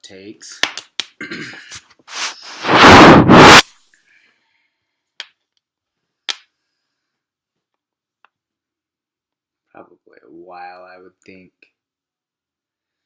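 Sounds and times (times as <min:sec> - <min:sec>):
scraping rub on microphone: 0:02.1 - 0:03.7.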